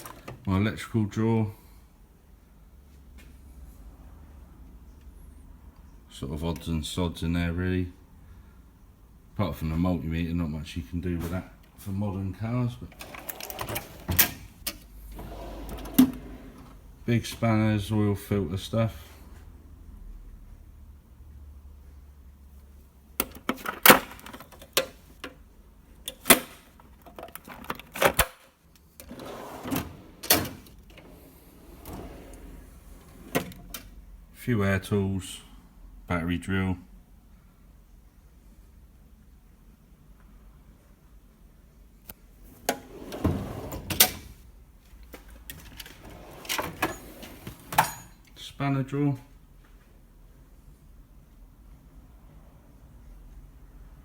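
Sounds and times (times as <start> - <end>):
drawer sliding on runners: 12.9 - 17.4, 29.0 - 33.9, 42.5 - 44.4, 45.5 - 48.1
metal tools clacking: 45.5 - 48.3.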